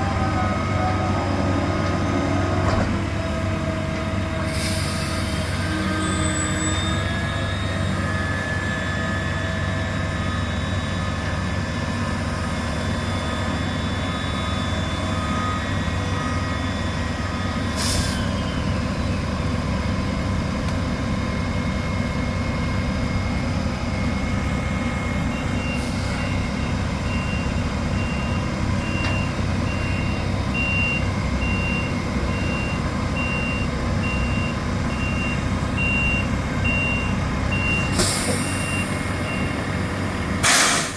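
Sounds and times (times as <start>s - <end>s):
heavy truck engine running: 0.0s - 40.9s
short air hisses: 4.5s - 5.6s, 17.8s - 18.2s, 37.9s - 38.7s, 40.4s - 40.9s
backup alarm beeping: 25.2s - 39.8s.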